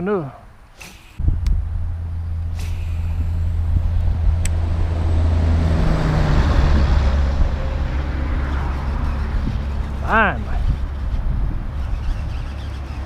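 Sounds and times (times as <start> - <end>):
engine humming: 0.4 - 13.0
hiss: 0.8 - 1.2, 2.6 - 3.2.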